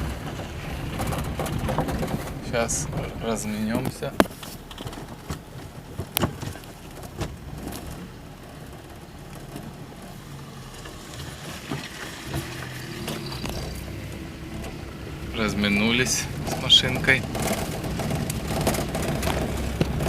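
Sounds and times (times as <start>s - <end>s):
car engine and road noise: 0.0s - 20.0s
knocks and rattles: 0.0s - 20.0s
car passing: 6.6s - 20.0s.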